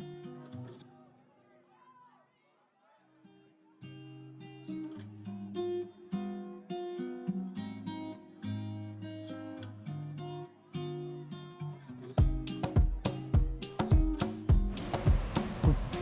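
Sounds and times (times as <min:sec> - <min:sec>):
acoustic guitar strumming: 0:03.9 - 0:16.0.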